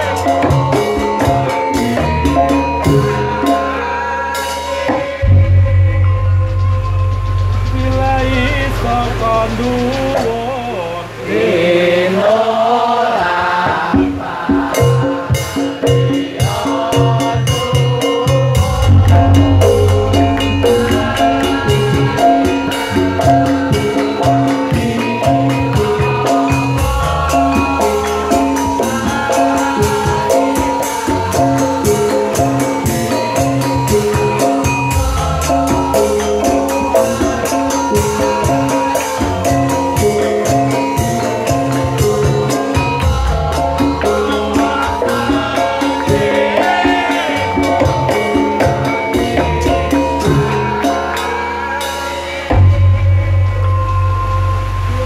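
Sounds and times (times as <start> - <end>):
drums: 0.0 - 55.0
struck metal bars melody: 5.2 - 10.6, 17.7 - 51.1.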